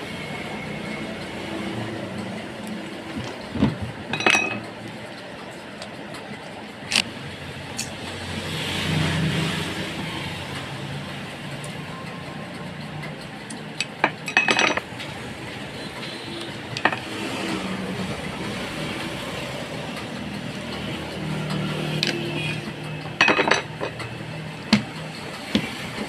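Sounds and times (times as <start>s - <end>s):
metal parts and tools clinking: 2.6s - 5.2s, 13.4s - 15.1s, 16.5s - 17.6s, 21.9s - 25.0s.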